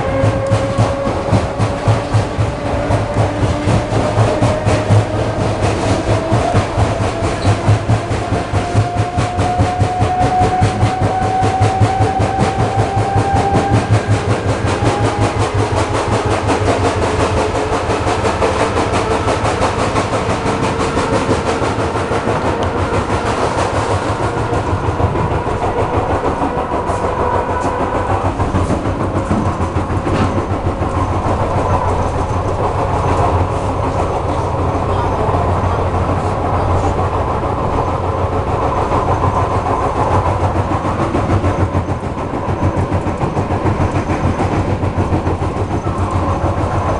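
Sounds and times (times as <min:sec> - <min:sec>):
train bogie knocking: 0:00.0 - 0:46.9
train whine rising: 0:00.0 - 0:46.9.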